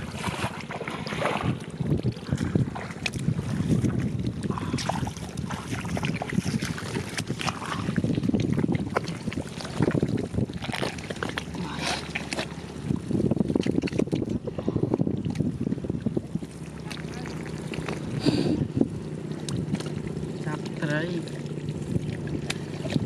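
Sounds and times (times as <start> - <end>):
muddy water sloshing and splashing: 0.0 - 23.0.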